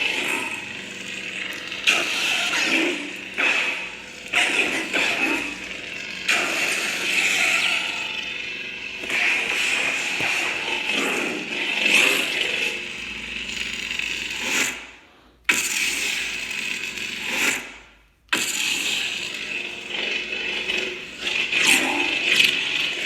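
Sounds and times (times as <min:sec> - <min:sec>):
crackling lightsaber hum: 0:00.0 - 0:14.8, 0:18.4 - 0:23.0
lightsaber igniting: 0:00.1 - 0:14.6.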